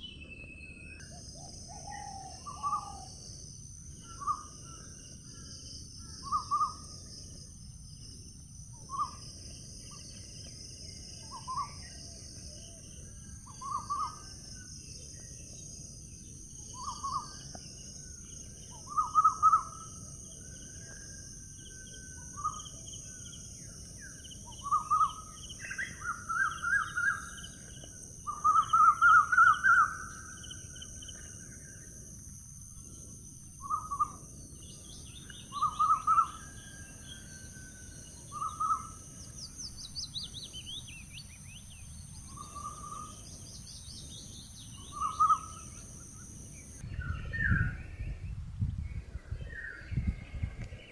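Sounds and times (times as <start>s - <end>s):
songbird calling: 0.0s - 8.1s, 8.7s - 32.2s, 32.8s - 48.3s.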